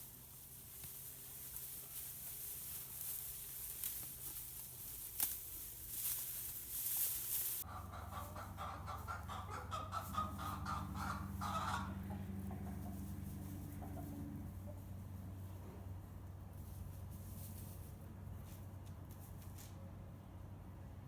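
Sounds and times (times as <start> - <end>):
chickens clucking: 0.0 - 15.8.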